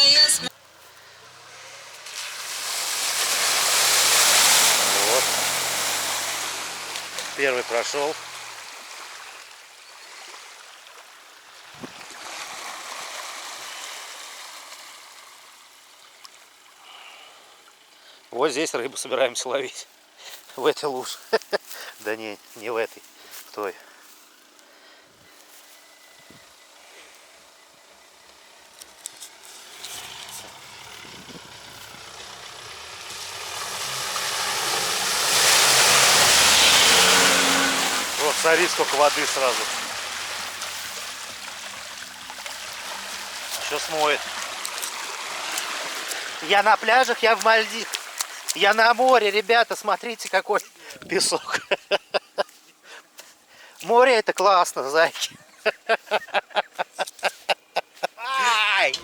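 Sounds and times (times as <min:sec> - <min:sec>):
vehicle engine running: 0:00.0 - 0:02.2, 0:04.6 - 0:08.7, 0:25.4 - 0:46.4
water splashing: 0:00.0 - 0:16.8, 0:26.0 - 0:51.9, 0:57.0 - 0:59.0.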